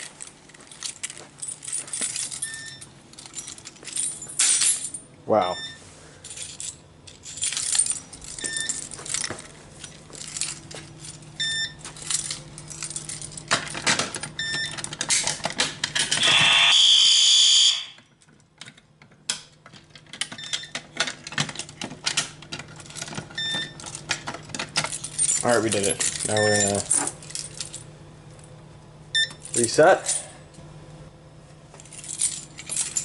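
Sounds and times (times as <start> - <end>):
fire alarm jangling clatter: 0.0 - 30.6, 31.7 - 33.0
loud steady horn tone: 16.2 - 18.0.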